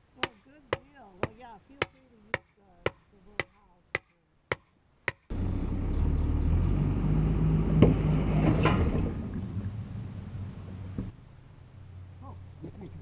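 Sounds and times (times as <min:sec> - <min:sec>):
bird chirps: 0:05.3 - 0:06.8, 0:10.2 - 0:10.5
vehicle engine running: 0:05.3 - 0:13.0.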